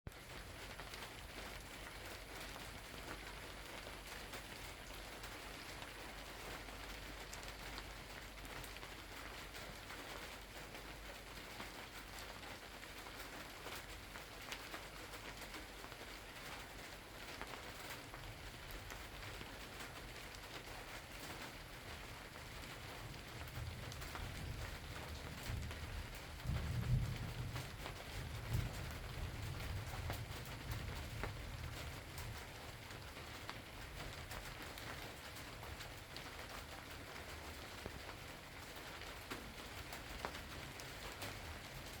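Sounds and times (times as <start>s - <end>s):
steady rain: 0.1s - 42.0s
distant thunder rumble: 23.5s - 32.2s.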